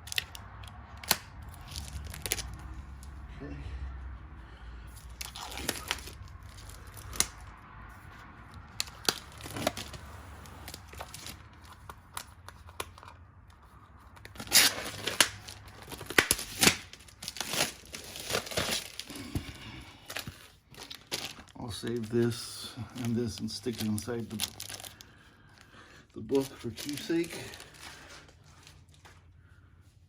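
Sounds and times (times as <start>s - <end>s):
packaging crinkling and crackling: 0.0s - 3.2s, 5.0s - 7.5s, 8.5s - 29.3s
packaging tearing: 0.0s - 3.2s, 5.1s - 7.5s, 8.6s - 13.2s, 14.1s - 25.2s, 26.3s - 29.1s.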